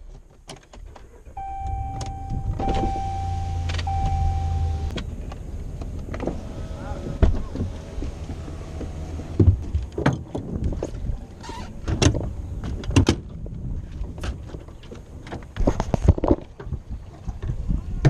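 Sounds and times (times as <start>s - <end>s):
low steady rumble: 1.1s - 12.8s.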